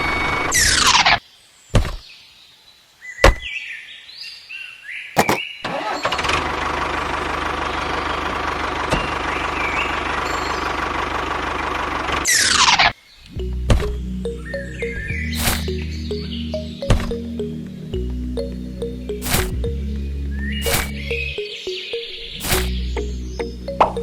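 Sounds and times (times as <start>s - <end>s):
engine running: 5.8s - 12.3s, 13.4s - 21.5s, 22.2s - 24.0s
stepped electronic tone: 13.3s - 24.0s.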